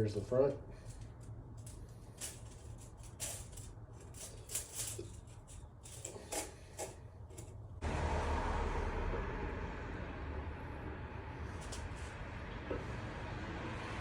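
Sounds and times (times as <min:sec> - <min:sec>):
metal gasket clicks and rustles: 0:00.8 - 0:07.6.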